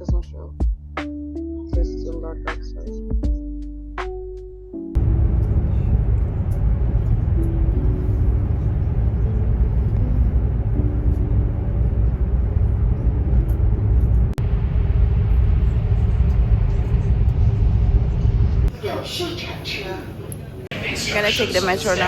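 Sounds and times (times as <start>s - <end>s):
vehicle engine rumble: 5.0s - 18.7s.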